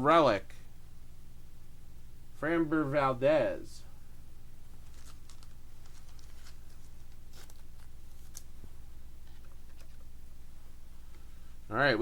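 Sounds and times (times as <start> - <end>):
low electrical hum: 0.0 - 12.0
trading cards clicking and rustling: 4.8 - 10.1.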